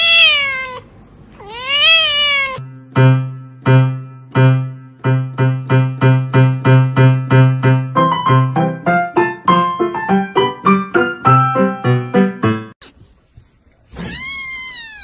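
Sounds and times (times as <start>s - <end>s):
cat meowing: 0.0s - 2.7s, 13.9s - 15.0s
piano-like music: 2.6s - 12.8s.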